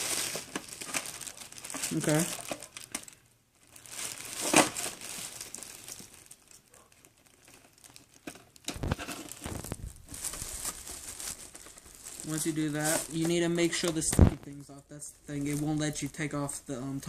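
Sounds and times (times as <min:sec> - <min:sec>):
handling noise: 0:06.7 - 0:14.4.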